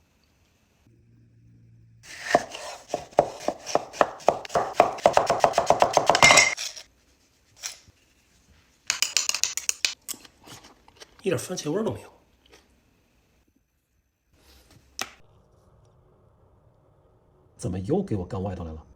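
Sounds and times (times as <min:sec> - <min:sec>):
knife chopping on cutting board: 0:02.1 - 0:06.6.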